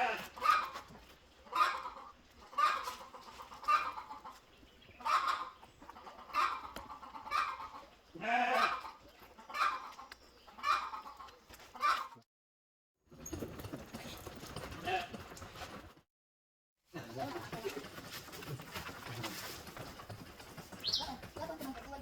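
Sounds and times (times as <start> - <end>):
farm animal calling: 0.0 - 12.2, 18.6 - 22.0.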